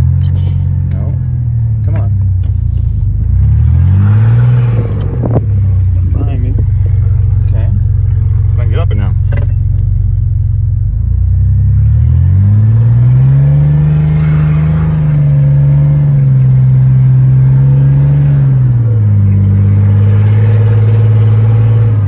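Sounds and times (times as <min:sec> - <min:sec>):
pickup truck engine revving: 0:03.3 - 0:09.2, 0:11.4 - 0:22.0.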